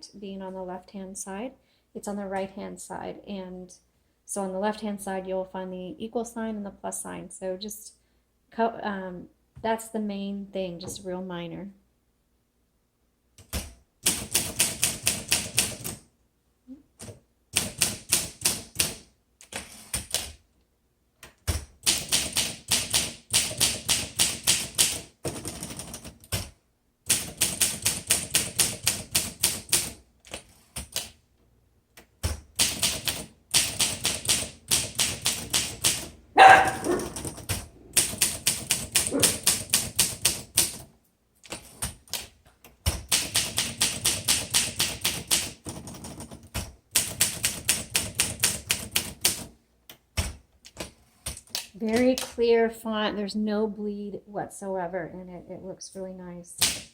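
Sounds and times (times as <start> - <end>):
typewriter typing: 13.4 - 16.0, 17.0 - 20.4, 21.4 - 31.2, 32.2 - 49.6.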